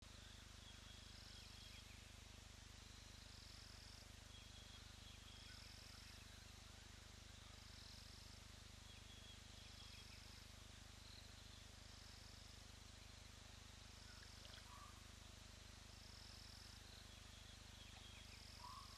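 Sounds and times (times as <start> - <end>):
low steady hiss: 0.0 - 18.9
insect trills: 11.0 - 15.1, 15.9 - 18.9.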